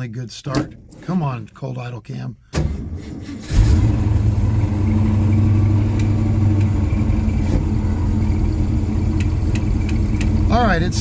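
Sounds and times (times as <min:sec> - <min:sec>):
car engine idling: 0:02.7 - 0:11.0.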